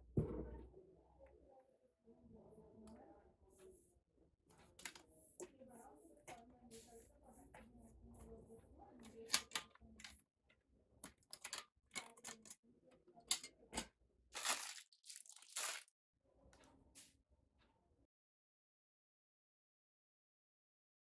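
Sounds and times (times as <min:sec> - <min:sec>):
packaging rustling and crinkling: 0:14.4 - 0:15.9.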